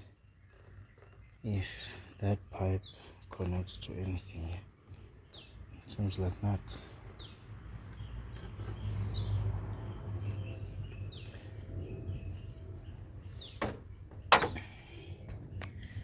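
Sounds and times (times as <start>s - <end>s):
birds chirping: 0.0s - 16.0s
sharp knocks: 13.6s - 14.8s.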